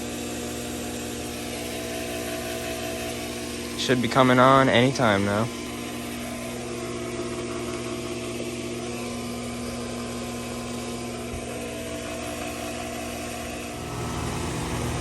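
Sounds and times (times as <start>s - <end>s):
mechanical hum with tones: 0.0s - 15.0s
low drone of condensing unit: 11.0s - 15.0s.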